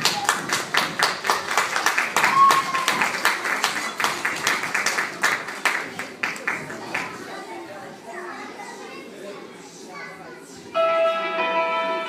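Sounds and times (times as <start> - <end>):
audience clapping: 0.0 - 7.2.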